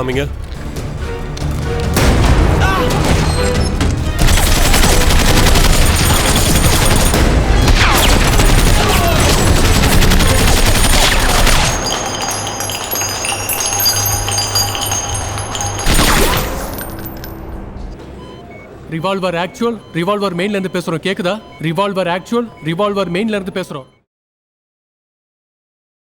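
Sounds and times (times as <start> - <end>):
rapid gunfire: 4.2 - 14.5
high steady tones: 8.0 - 17.3.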